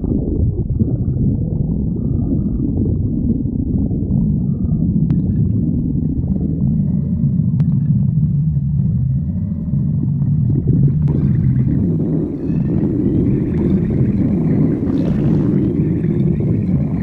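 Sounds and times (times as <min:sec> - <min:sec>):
stomach growling: 0:00.0 - 0:17.0.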